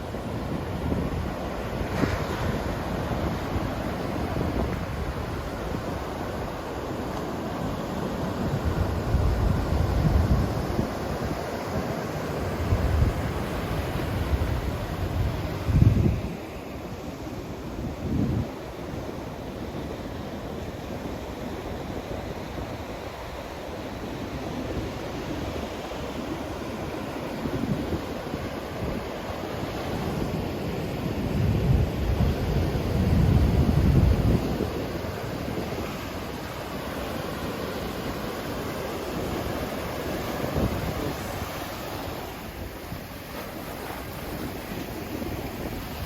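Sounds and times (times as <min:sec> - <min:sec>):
ocean waves breaking: 0:00.0 - 0:46.0
wind on microphone: 0:08.4 - 0:16.5, 0:17.8 - 0:18.8, 0:24.4 - 0:46.0.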